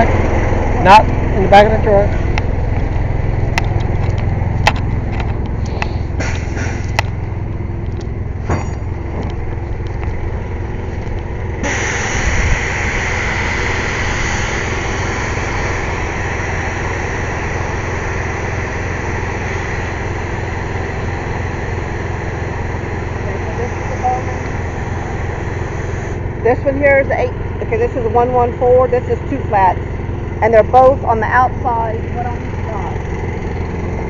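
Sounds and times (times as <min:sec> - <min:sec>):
engine droning: 0:00.0 - 0:34.0
compressed air hissing: 0:05.6 - 0:07.0, 0:11.6 - 0:26.2
sharp metallic clanks: 0:08.4 - 0:09.4.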